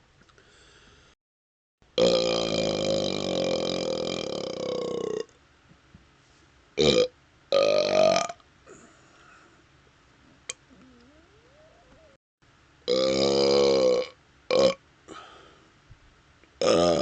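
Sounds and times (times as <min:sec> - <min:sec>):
man belching: 0:02.0 - 0:05.3, 0:06.8 - 0:08.4, 0:12.9 - 0:14.8, 0:16.6 - 0:17.0.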